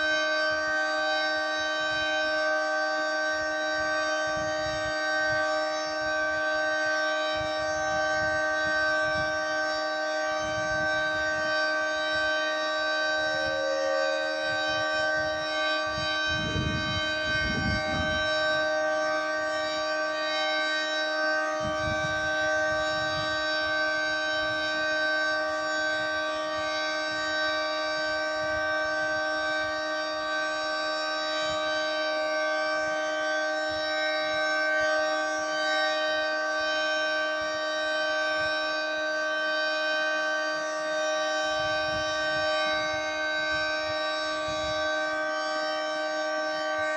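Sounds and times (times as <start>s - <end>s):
steady high-pitched warning siren: 0.0s - 46.9s.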